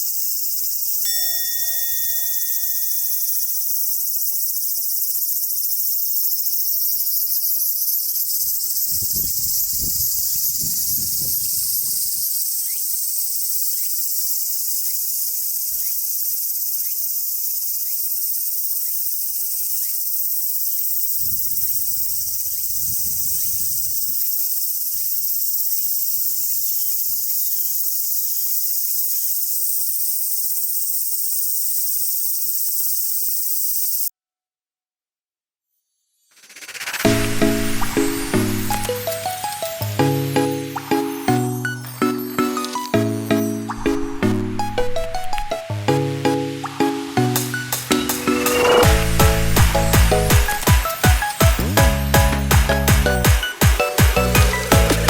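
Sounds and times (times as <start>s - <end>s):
insects chirping and buzzing: 0.0s - 34.1s, 35.9s - 51.5s
low rumble: 48.0s - 50.6s.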